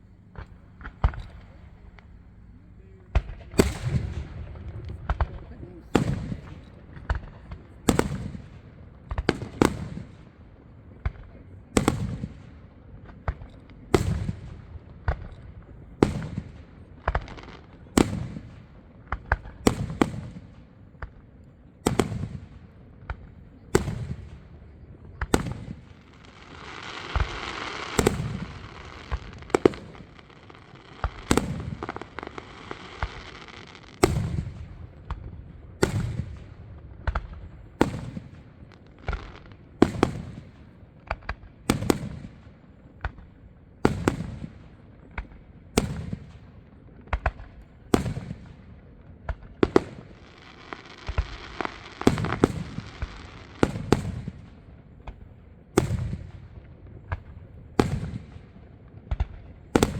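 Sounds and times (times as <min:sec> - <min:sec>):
fireworks bangs: 0:00.0 - 0:10.3, 0:10.9 - 0:21.2, 0:21.8 - 0:59.9
fireworks crackling hiss: 0:16.1 - 0:20.4, 0:23.8 - 0:42.4, 0:49.6 - 0:55.2.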